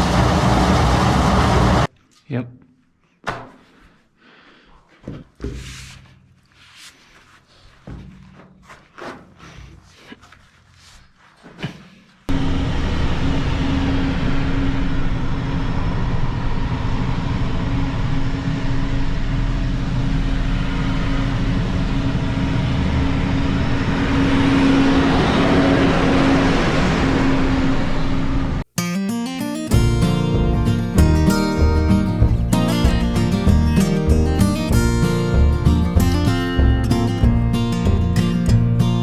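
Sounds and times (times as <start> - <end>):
loud steady engine hum: 0.0 - 1.9, 12.3 - 28.6, 29.7 - 38.8.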